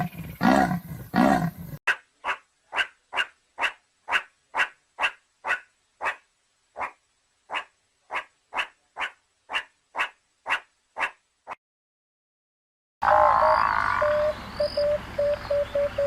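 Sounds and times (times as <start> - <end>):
animal barking calls: 0.0 - 11.6.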